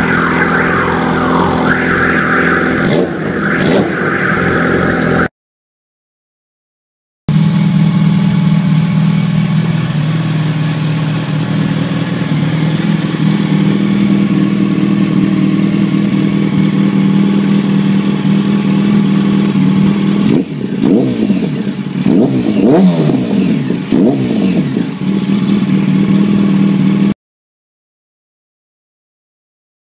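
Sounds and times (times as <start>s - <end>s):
engine throttle blips: 0.0s - 5.3s, 7.3s - 27.1s
motorcycle engine idling: 7.3s - 27.1s.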